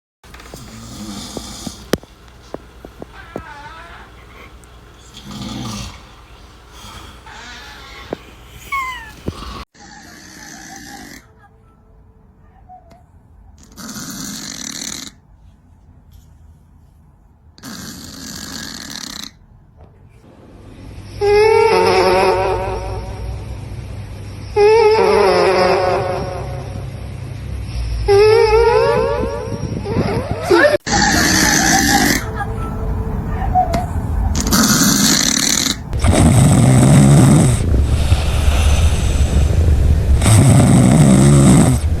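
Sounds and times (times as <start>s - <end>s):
cat snoring: 0.6s - 2.0s, 3.2s - 11.3s, 13.6s - 15.2s, 17.6s - 19.4s, 30.9s - 32.3s, 33.3s - 39.1s, 40.2s - 42.0s.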